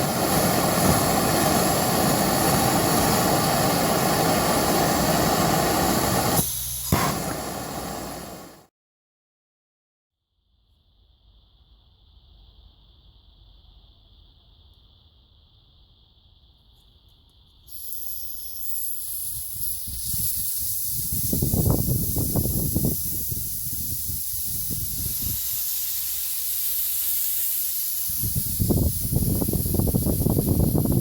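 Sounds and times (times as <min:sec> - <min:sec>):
gas burner hissing: 0:00.0 - 0:08.7, 0:17.7 - 0:31.0.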